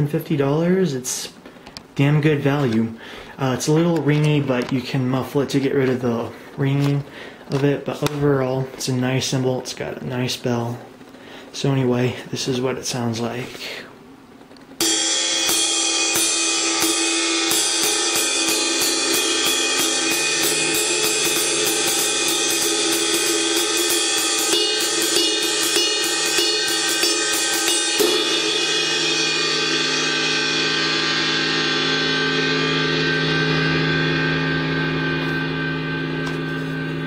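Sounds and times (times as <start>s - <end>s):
cymbal ringing: 14.8s - 37.0s
drumstick on ride cymbal: 14.8s - 37.0s.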